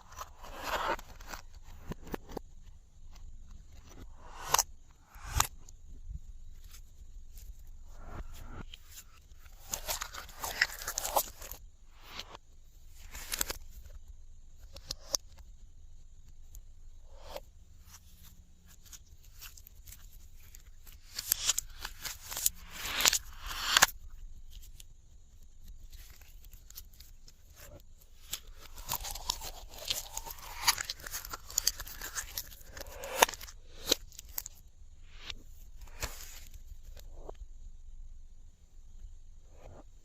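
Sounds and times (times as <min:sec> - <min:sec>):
slime squishing: 0:28.2 - 0:34.6.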